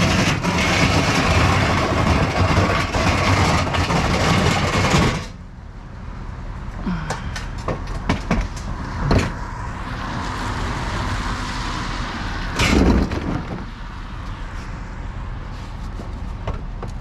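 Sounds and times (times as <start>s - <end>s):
knocks and clatters of handling: 0.0s - 5.4s, 7.1s - 9.4s, 12.6s - 13.7s, 15.8s - 17.0s
thump and rustle: 12.6s - 13.7s.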